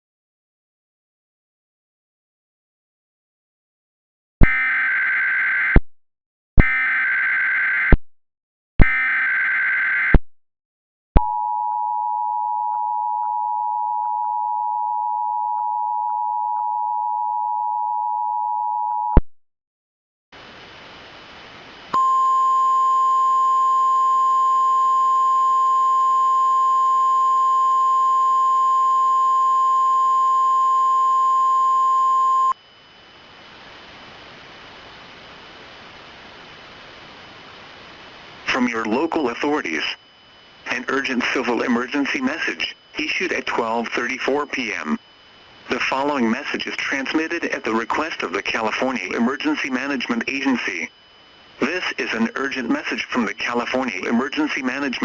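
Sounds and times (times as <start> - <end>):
static hiss: 20.4 - 22.0, 32.9 - 55.0
two-tone attention signal: 22.0 - 32.6
screechy data bursts: 40.6 - 55.0.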